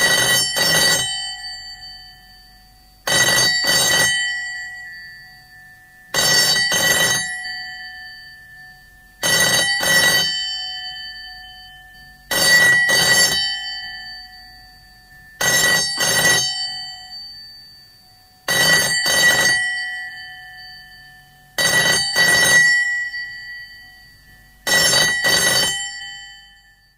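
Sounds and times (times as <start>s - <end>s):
telephone bell double ringing: 0.0s - 8.5s, 9.2s - 26.9s.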